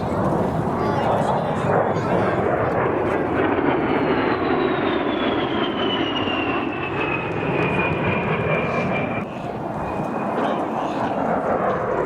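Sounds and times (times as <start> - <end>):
jet engine rushing: 0.0 - 12.0
jet whine falling in pitch: 3.7 - 11.3.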